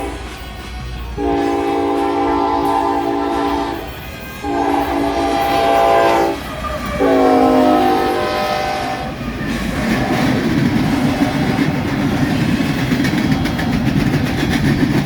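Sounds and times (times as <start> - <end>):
train horn blasts: 0.0 - 0.5, 1.1 - 9.2.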